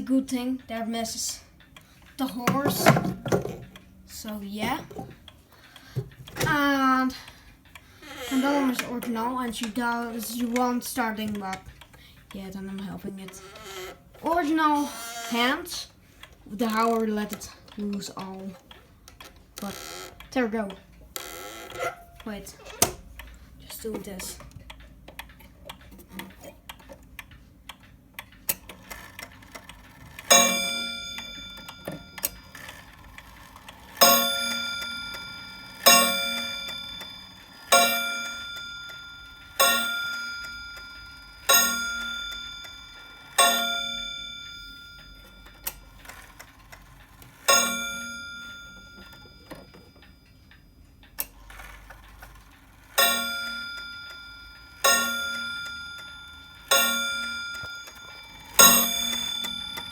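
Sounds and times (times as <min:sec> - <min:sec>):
faint clock ticking: 0:00.0 - 0:59.9
clock striking ringing strokes: 0:12.4 - 0:15.9, 0:28.8 - 0:59.9.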